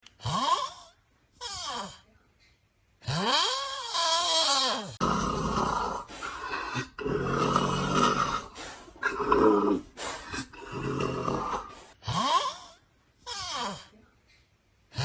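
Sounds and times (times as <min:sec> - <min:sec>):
loud rough snoring: 0:05.0 - 0:12.6.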